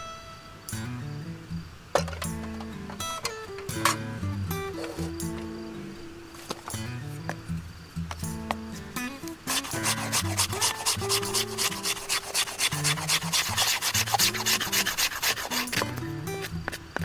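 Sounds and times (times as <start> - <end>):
soft guitar music: 0.0 - 17.0
hand tool scraping wood: 9.5 - 16.8.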